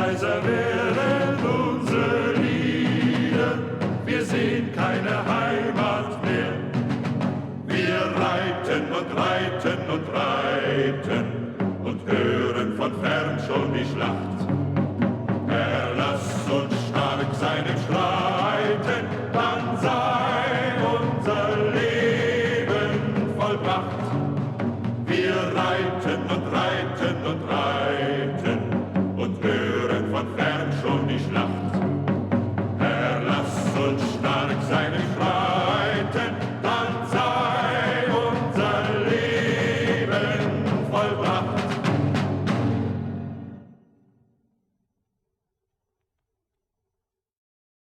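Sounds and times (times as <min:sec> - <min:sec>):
male choir singing: 0:00.0 - 0:14.6, 0:15.5 - 0:31.9, 0:32.8 - 0:42.5
steady drumbeat: 0:00.0 - 0:43.4
military march music: 0:15.3 - 0:28.2, 0:32.1 - 0:43.4.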